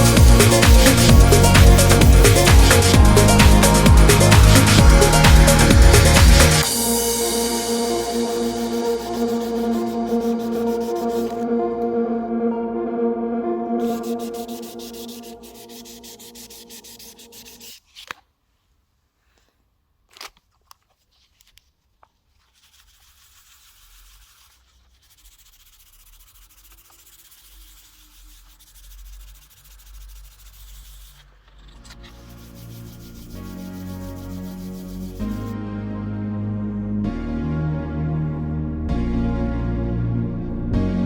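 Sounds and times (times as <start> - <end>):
background music: 0.0 - 17.2, 31.9 - 41.0.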